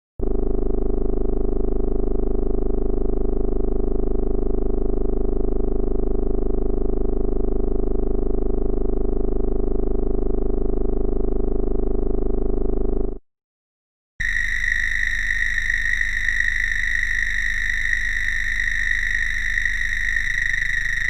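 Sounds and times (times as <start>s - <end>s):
eerie pulsing synth drone: 14.2s - 21.0s.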